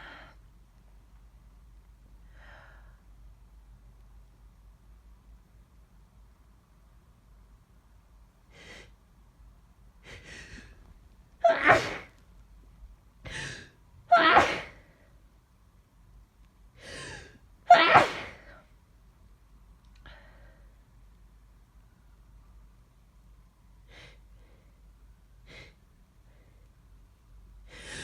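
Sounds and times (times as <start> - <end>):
person sneezing: 11.4 - 12.1, 13.3 - 14.8, 16.9 - 18.5.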